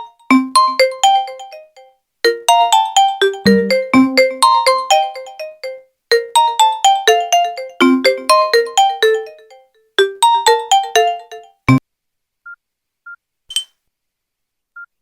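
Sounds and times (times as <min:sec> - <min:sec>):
ringtone melody of short notes: 0:00.7 - 0:04.3
sharp click: 0:13.5 - 0:13.7.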